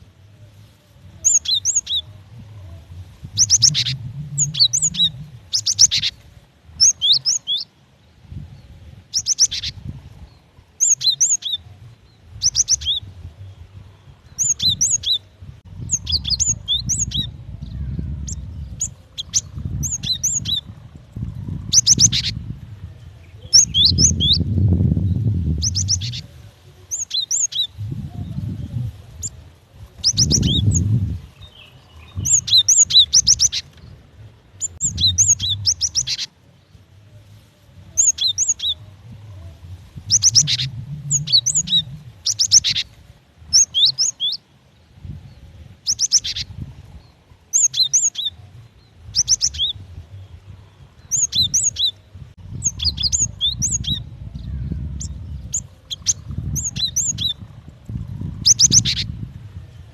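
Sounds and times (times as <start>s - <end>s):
faint low rumble: 0.0s - 59.9s
bird chirping: 1.2s - 2.1s, 2.7s - 6.2s, 10.8s - 11.7s, 14.2s - 22.4s, 23.2s - 26.3s, 30.0s - 34.0s, 34.6s - 36.3s, 37.9s - 44.4s, 47.5s - 57.6s, 58.2s - 59.2s.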